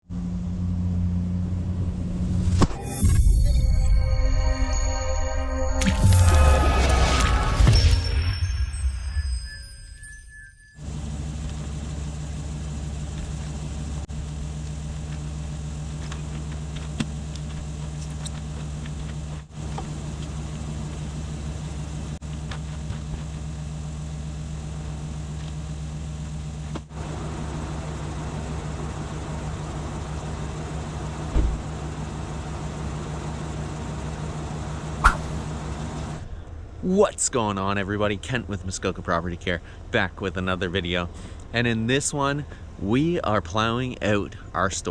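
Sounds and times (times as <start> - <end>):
pickup truck engine running: 10.8 - 36.8.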